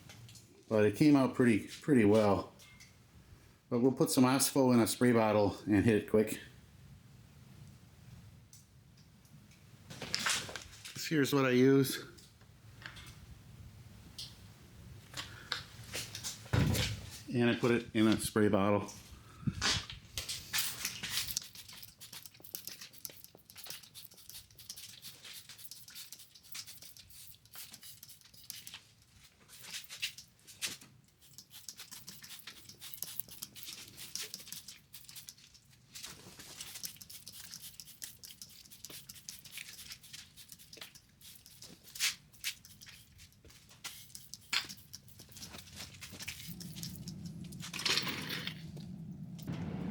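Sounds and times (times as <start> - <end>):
spray bottle squirting: 20.2 - 28.8, 29.5 - 30.4, 31.1 - 35.7, 36.4 - 48.2.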